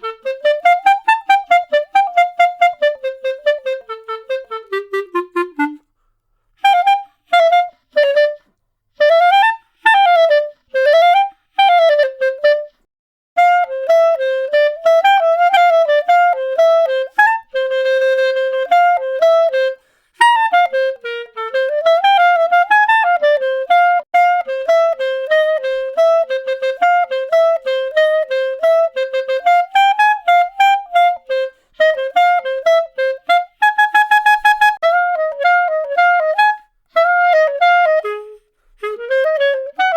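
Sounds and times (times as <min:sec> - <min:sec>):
solo clarinet melody: 0:00.0 - 0:39.9.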